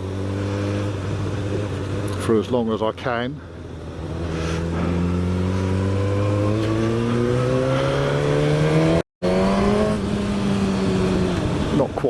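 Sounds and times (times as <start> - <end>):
motorcycle engine accelerating: 0.0 - 2.5, 3.6 - 12.0.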